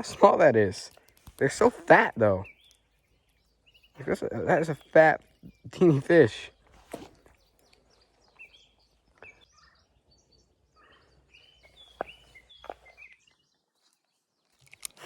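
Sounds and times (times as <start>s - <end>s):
light clicks: 0.9s - 1.5s
faint bird chirps: 2.2s - 15.0s.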